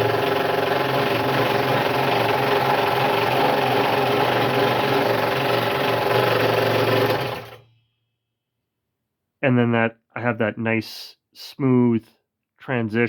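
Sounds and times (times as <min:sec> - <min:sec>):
scroll saw cutting wood: 0:00.0 - 0:07.6.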